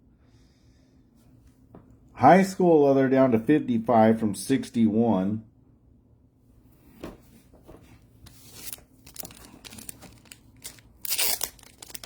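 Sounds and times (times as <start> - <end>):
packaging crinkling and tearing: 8.3 - 12.0.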